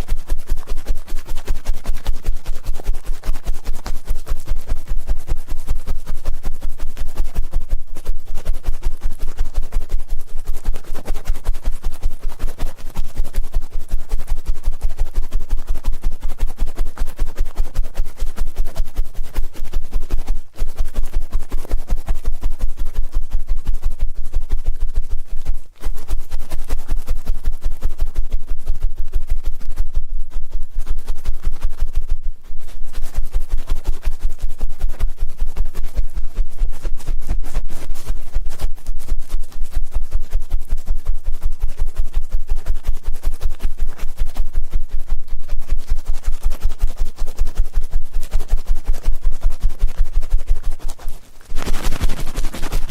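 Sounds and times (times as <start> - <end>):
ear cleaning scratching and rubbing: 0.0 - 52.9.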